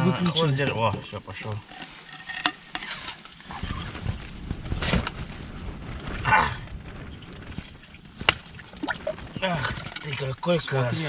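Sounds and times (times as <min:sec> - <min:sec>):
fish scraping on ice: 0:01.6 - 0:04.2.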